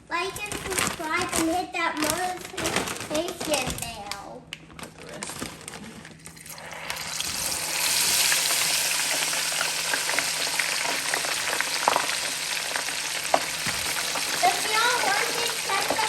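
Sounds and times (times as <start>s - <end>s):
oil popping and crackling: 0.4s - 16.0s
fries sizzling in hot oil: 6.4s - 16.0s.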